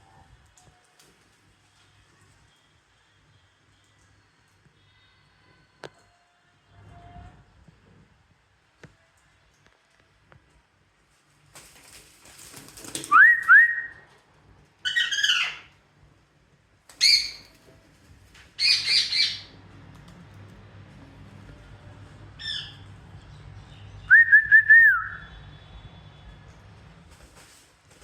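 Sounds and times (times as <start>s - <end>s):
parrots squawking: 14.8s - 15.7s, 17.0s - 17.5s, 18.6s - 19.6s, 22.4s - 22.9s
rising whistled notes: 24.0s - 25.5s.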